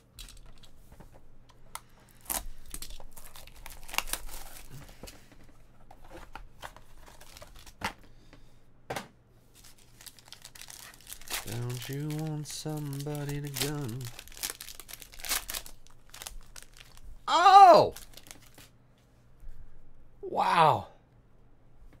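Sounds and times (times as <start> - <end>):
card pack wrapper tearing and crinkling: 2.2 - 4.8, 7.0 - 7.8, 9.6 - 17.0, 17.8 - 18.7.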